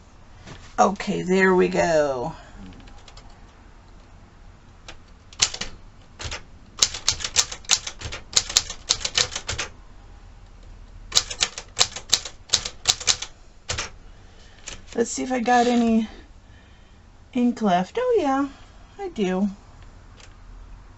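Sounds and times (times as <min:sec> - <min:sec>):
typewriter typing: 0:02.8 - 0:03.4, 0:04.9 - 0:09.7, 0:11.1 - 0:14.0.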